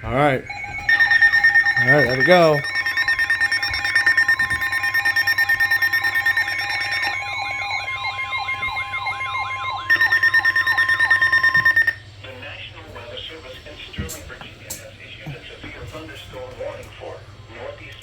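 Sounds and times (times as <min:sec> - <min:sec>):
weather radio alert tone: 0:00.0 - 0:12.0
fast beeping: 0:00.4 - 0:12.0.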